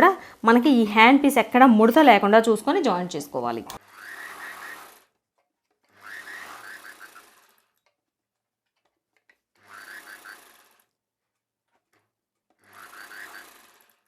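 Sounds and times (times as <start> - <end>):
sewing machine running: 3.8 - 5.2, 5.8 - 7.8, 9.5 - 11.0, 12.5 - 14.0.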